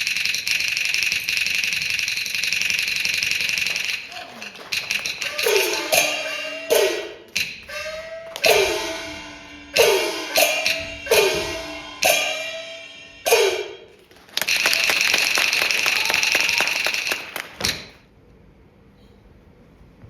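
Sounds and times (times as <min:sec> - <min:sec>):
metal percussion roll: 0:00.0 - 0:17.9
large gong strikes: 0:08.4 - 0:13.9.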